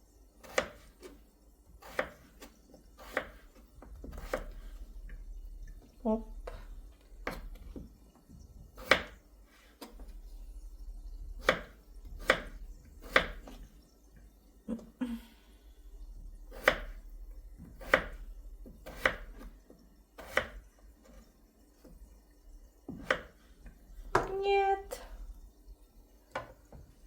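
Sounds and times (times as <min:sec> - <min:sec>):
knife chopping on cutting board: 0:00.4 - 0:01.2, 0:01.8 - 0:03.4, 0:04.0 - 0:04.6, 0:08.8 - 0:09.2, 0:11.4 - 0:13.6, 0:16.5 - 0:17.0, 0:17.8 - 0:18.2, 0:18.8 - 0:19.5, 0:20.2 - 0:20.6.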